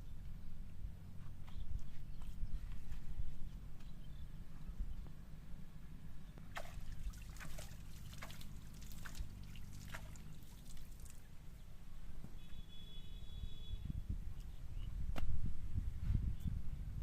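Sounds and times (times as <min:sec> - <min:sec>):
water dripping and trickling: 0:06.6 - 0:11.3.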